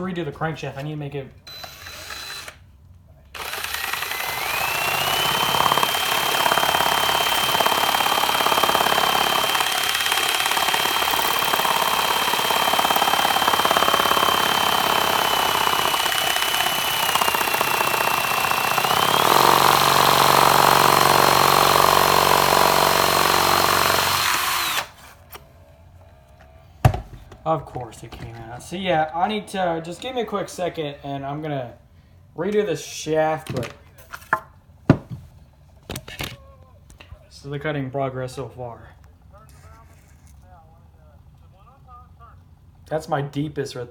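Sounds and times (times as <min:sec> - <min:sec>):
electric drill motor whine: 0:01.4 - 0:02.6, 0:03.4 - 0:25.0.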